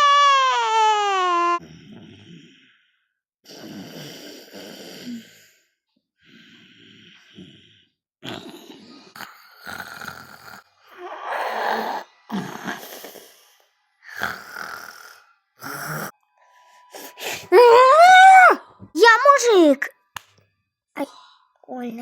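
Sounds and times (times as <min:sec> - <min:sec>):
man snoring: 0:03.5 - 0:05.6, 0:06.3 - 0:13.0, 0:14.1 - 0:16.1.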